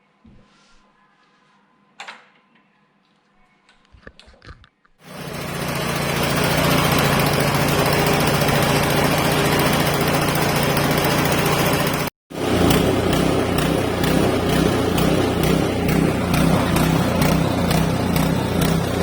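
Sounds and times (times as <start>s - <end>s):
snowblower engine starting and running: 5.0s - 19.0s.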